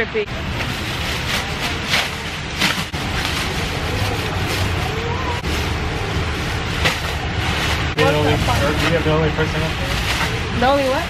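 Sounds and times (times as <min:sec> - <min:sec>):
faint voices: 0:03.3 - 0:06.6.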